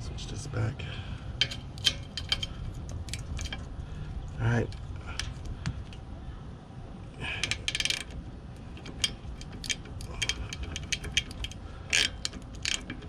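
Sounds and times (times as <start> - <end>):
hand ratchet clicking: 1.4 - 3.7, 7.2 - 13.0.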